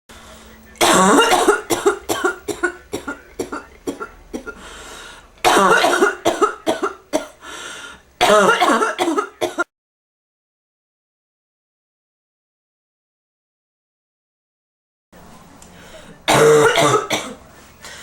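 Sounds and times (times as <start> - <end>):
person coughing hard: 0.8 - 4.6, 5.4 - 7.4, 8.2 - 9.7, 16.3 - 17.4.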